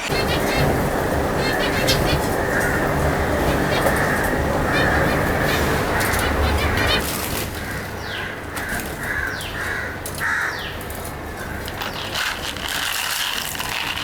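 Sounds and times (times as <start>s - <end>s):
downward-sliding bird calls: 0.0s - 7.5s
birds chirping: 0.0s - 9.8s.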